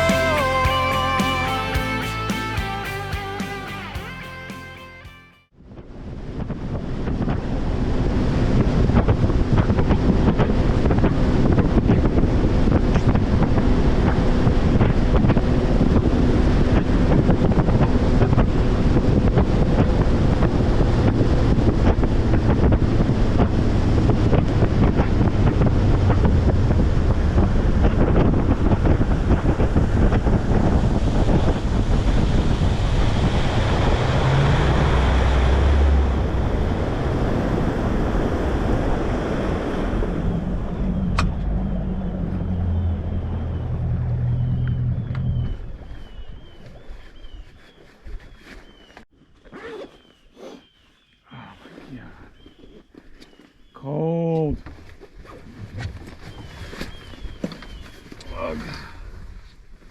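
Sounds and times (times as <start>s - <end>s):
boat motor drone: 0.0s - 3.5s, 6.9s - 45.8s
wind buffeting microphone: 5.7s - 48.9s, 54.6s - 59.9s
water rushing past hull: 6.0s - 45.3s.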